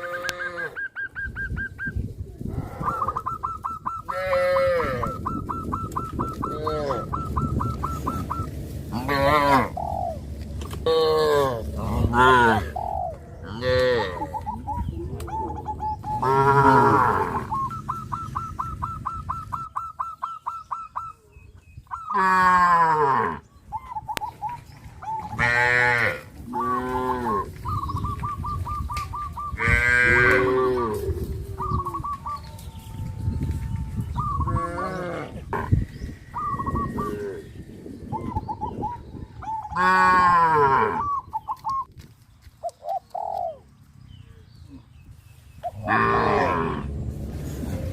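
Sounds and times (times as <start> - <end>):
cattle mooing: 8.9 - 9.8, 10.8 - 14.5, 16.2 - 17.6, 25.4 - 27.6, 29.6 - 31.3, 39.7 - 41.0, 45.8 - 47.0.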